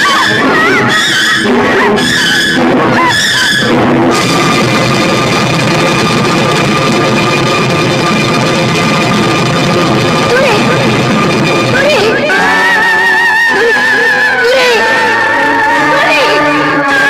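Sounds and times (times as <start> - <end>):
loud rock music with drums: 0.0 - 13.0.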